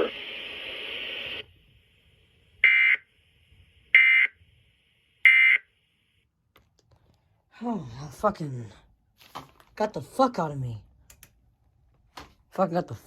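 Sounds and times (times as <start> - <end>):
radio hiss: 0.0 - 2.0.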